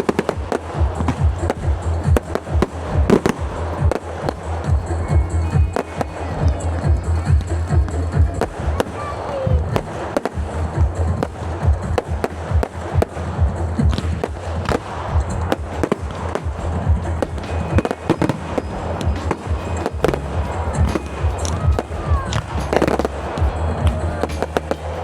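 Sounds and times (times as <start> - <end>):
background music with bass: 0.0 - 25.0
fireworks bangs and crackles: 0.0 - 25.0.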